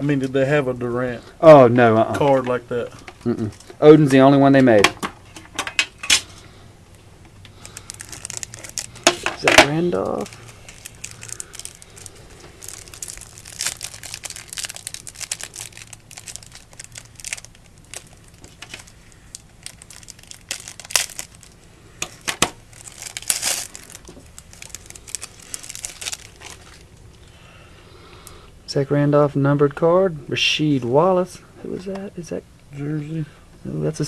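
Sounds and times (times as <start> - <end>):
packaging crinkling and tearing: 7.6 - 27.2.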